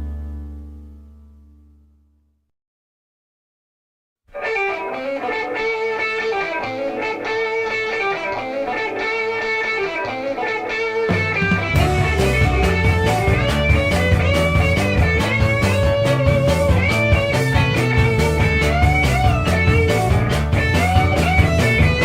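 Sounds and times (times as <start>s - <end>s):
bass guitar: 0.0s - 2.2s, 4.5s - 22.0s
electric guitar: 4.3s - 22.0s
drums: 10.9s - 22.0s.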